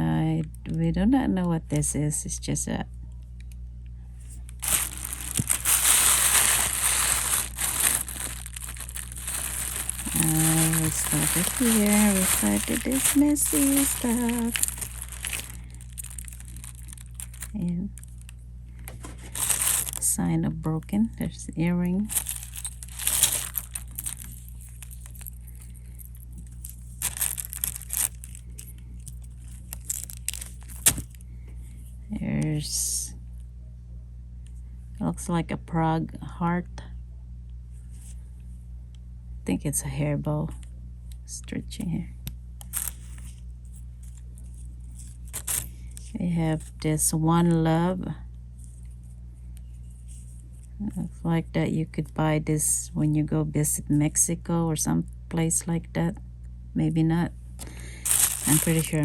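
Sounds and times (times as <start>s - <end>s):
steady low hum: 0.0s - 59.0s
plastic bag crinkling and rustling: 4.5s - 18.3s, 18.9s - 20.2s, 22.0s - 31.2s, 42.7s - 46.7s, 57.6s - 59.0s
jewelry rattling and clinking: 4.6s - 18.2s, 19.3s - 20.1s, 22.1s - 31.2s, 42.7s - 43.3s, 44.0s - 45.7s, 58.0s - 59.0s.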